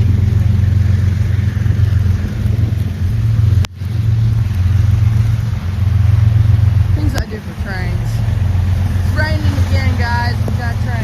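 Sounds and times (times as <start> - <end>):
heavy rain hiss: 0.0 - 11.0
low engine drone: 0.0 - 11.0.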